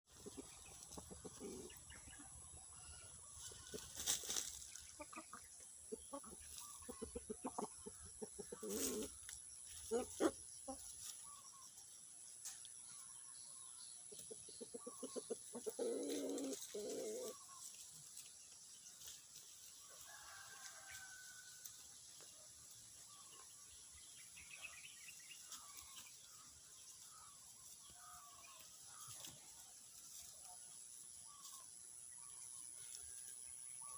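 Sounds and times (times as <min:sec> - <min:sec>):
chicken clucking: 0:00.1 - 0:11.8, 0:12.4 - 0:18.4, 0:27.8 - 0:30.7.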